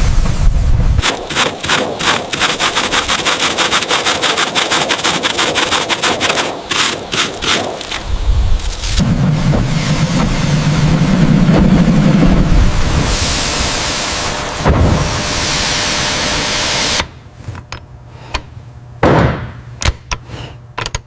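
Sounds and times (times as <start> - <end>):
low rumble: 0.0 - 1.0, 8.0 - 16.6
rapid rhythmic scraping: 1.0 - 8.0.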